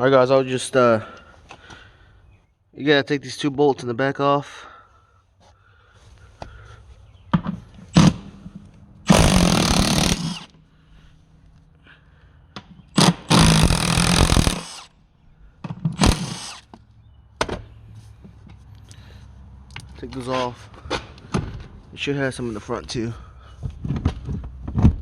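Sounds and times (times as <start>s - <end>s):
handheld power tool running: 9.1s - 10.5s, 13.0s - 14.9s, 16.0s - 16.7s.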